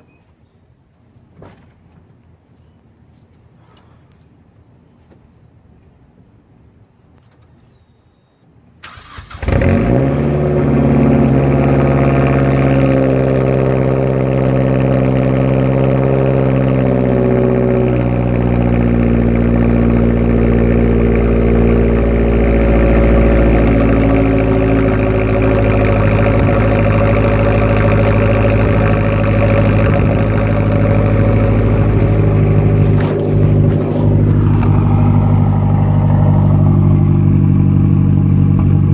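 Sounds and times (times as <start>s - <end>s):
car engine idling fast: 8.9s - 38.9s.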